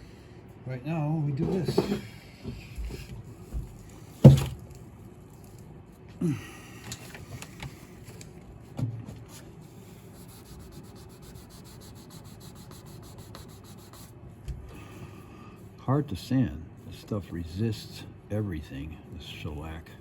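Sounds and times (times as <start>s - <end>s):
sanding scratching on wood: 10.2s - 14.1s.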